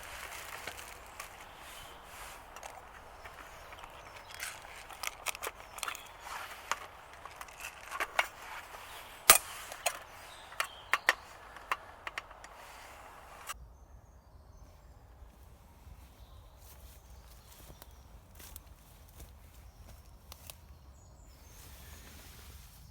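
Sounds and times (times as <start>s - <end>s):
dry wood cracking: 0.0s - 13.6s.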